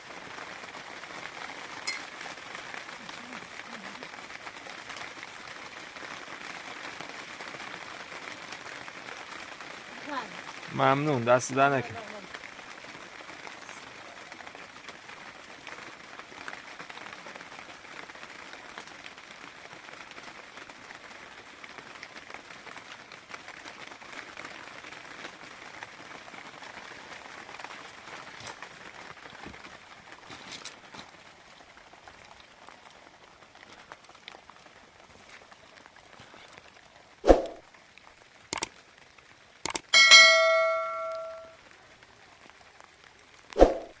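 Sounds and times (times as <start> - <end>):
sharp clicks: 39.7 - 39.9
bright bell chime: 39.8 - 41.5.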